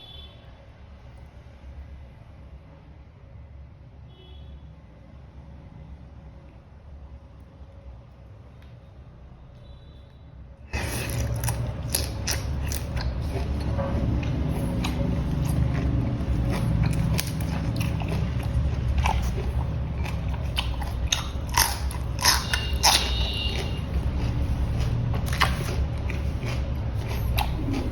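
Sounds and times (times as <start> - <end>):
biting and chewing shrimp: 10.7 - 27.9.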